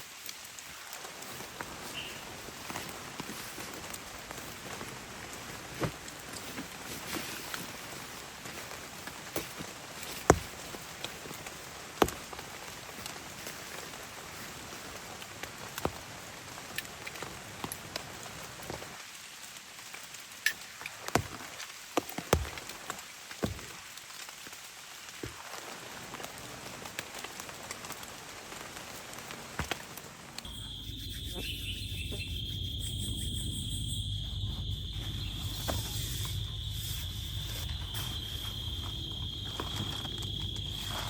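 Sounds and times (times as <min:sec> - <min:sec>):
rain falling: 0:00.0 - 0:30.6.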